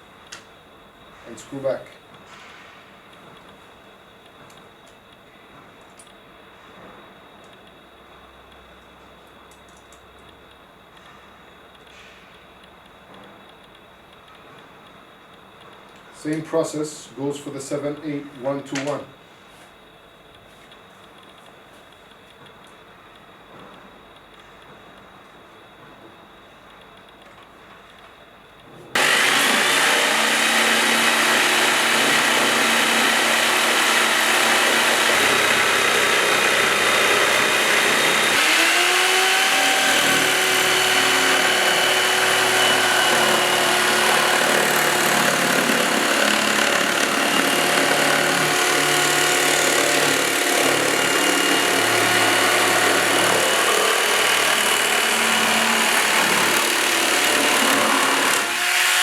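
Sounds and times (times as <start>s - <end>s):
electric jigsaw sawing wood: 29.0s - 59.0s.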